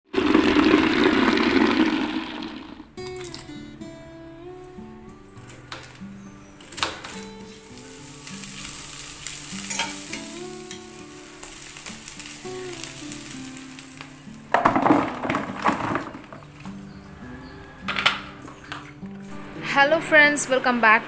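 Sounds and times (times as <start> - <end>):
soft background music: 3.0 - 21.0
food sizzling in a pan: 7.1 - 14.5.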